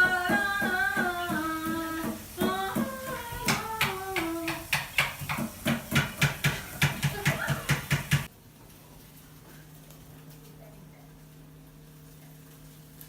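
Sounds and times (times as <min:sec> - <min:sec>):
quick steady beat: 0:00.0 - 0:08.3.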